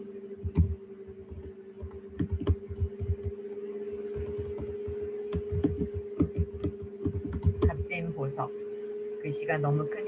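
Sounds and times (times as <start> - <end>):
low hum: 0.0 - 10.0
keyboard typing: 0.4 - 3.4, 4.1 - 7.9.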